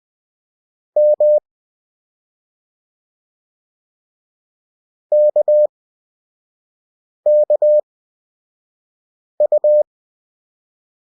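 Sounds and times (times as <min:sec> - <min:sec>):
morse code beeps: 0:01.0 - 0:01.4, 0:05.1 - 0:05.7, 0:07.3 - 0:07.8, 0:09.4 - 0:09.8.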